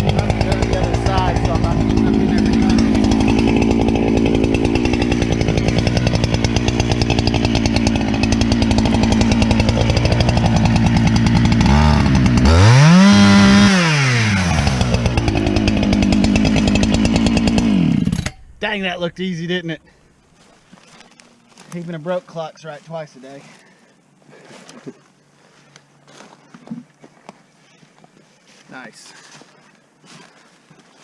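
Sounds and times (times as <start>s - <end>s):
chainsaw cutting through log: 0.0s - 18.4s.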